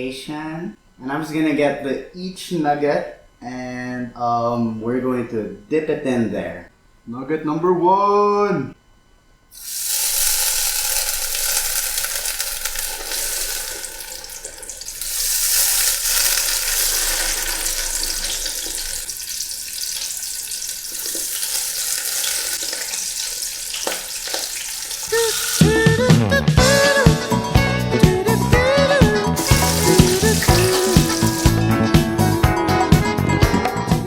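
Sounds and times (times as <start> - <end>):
food sizzling in hot oil: 9.6 - 26.8, 29.4 - 31.7.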